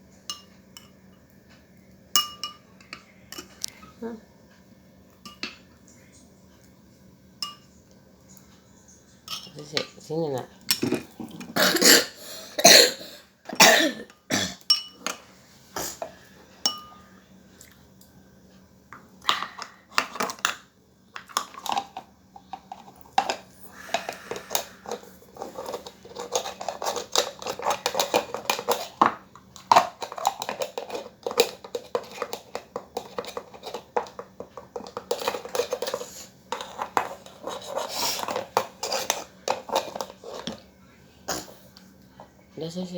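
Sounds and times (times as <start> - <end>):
spoon and dishes clinking: 0.3 - 1.3, 2.2 - 3.7, 5.2 - 5.7, 7.4 - 7.8, 9.2 - 11.2, 14.6 - 15.2, 16.6 - 17.1.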